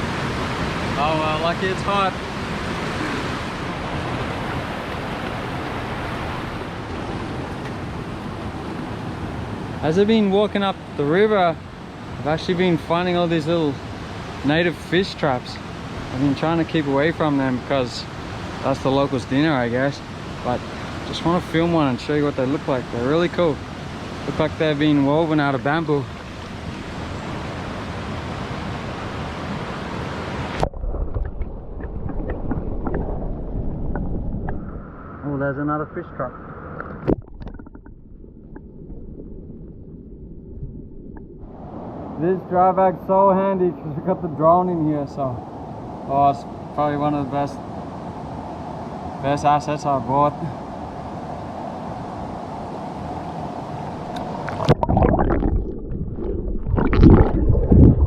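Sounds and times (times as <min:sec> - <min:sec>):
rushing river water: 0:00.0 - 0:30.6, 0:45.4 - 0:58.0
river water flowing over stones: 0:53.9 - 0:58.0.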